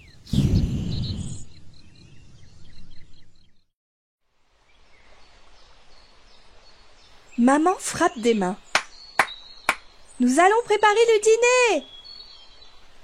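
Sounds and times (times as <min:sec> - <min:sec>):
small birds chirping: 0:00.0 - 0:03.7, 0:04.6 - 0:13.0
background hiss: 0:04.3 - 0:13.0.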